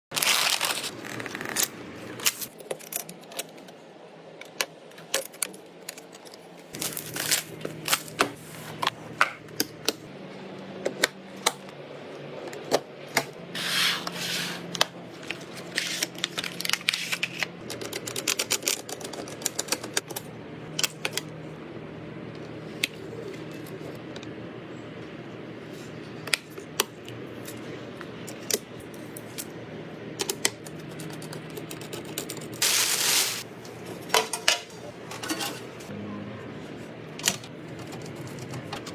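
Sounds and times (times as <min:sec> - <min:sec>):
computer parts clicking and tapping: 0:17.6 - 0:21.2, 0:30.2 - 0:32.6.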